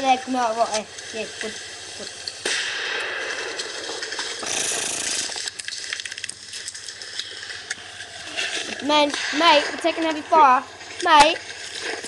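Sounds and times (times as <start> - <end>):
steady hiss: 0.0 - 12.0
airsoft guns firing: 2.4 - 5.3.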